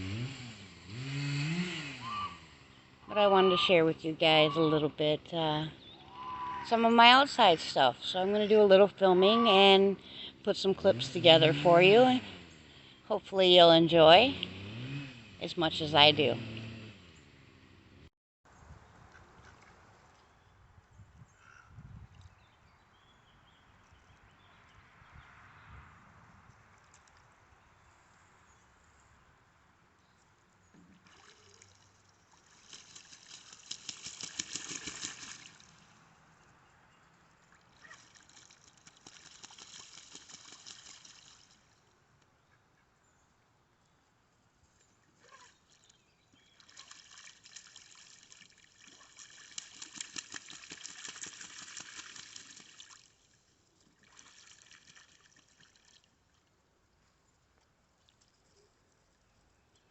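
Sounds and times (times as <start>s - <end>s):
water trickling and splashing: 30.8s - 36.3s, 37.0s - 42.0s, 44.8s - 56.6s.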